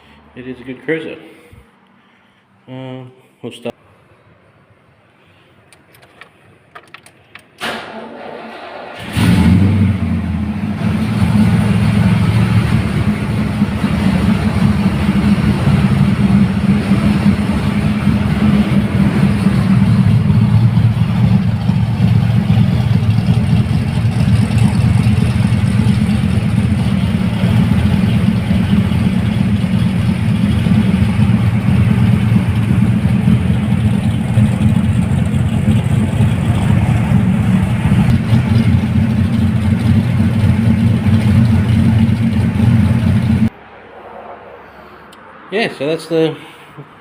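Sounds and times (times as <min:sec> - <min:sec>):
car engine running: 0:09.0 - 0:43.5.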